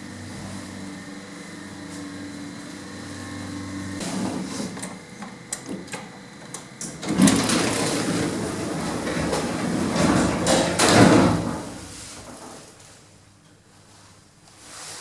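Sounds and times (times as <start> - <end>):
lift motor hum: 0.0 - 13.2
lift doors rattling open: 4.1 - 12.7.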